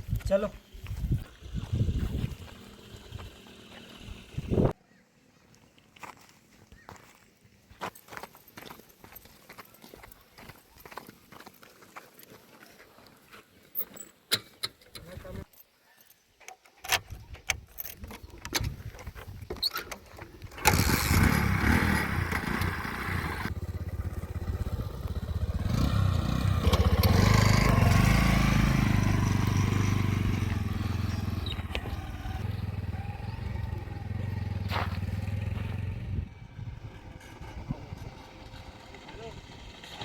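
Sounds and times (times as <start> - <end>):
diesel engine revving: 20.6 - 40.0.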